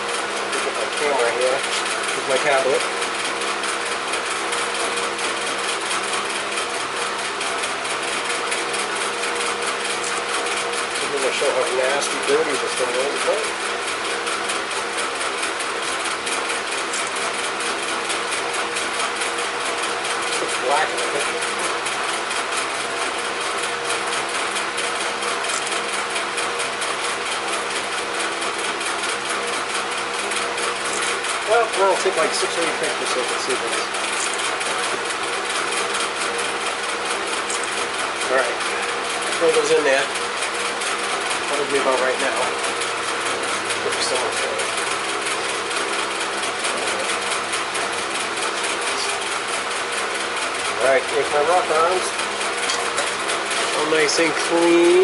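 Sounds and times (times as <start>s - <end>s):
small electric motor whirring: 0.0s - 55.0s.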